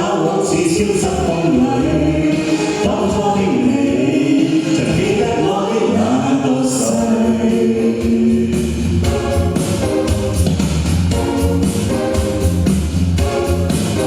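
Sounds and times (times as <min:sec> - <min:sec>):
person singing with accompaniment: 0:00.0 - 0:09.6.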